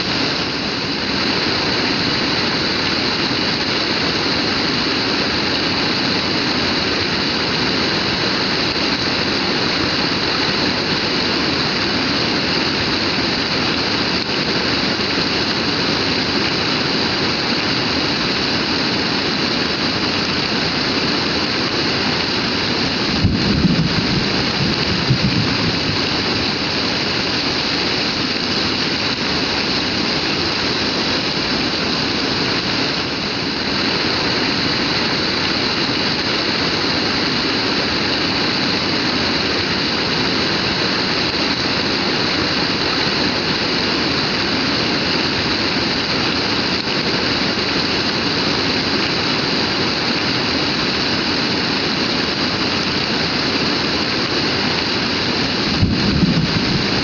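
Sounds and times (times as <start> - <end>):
heavy rain falling: 0.0 - 57.0
low rumble: 23.0 - 26.5, 55.6 - 57.0.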